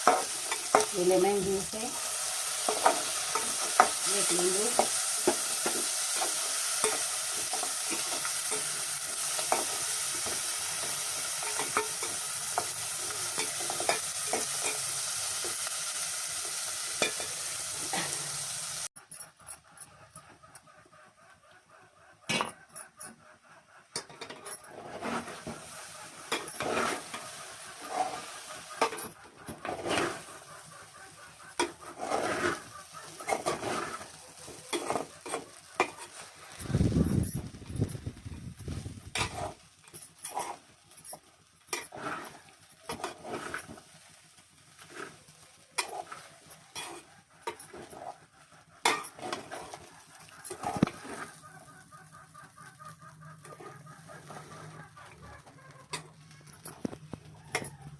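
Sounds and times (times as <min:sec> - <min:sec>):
spoon scraping and clinking on pan: 0:00.0 - 0:15.6, 0:26.2 - 0:27.3, 0:27.9 - 0:30.2, 0:31.4 - 0:36.3, 0:39.1 - 0:40.7, 0:45.8 - 0:48.2, 0:48.8 - 0:51.4
food sizzling in a pan: 0:00.0 - 0:18.9, 0:24.9 - 0:55.2.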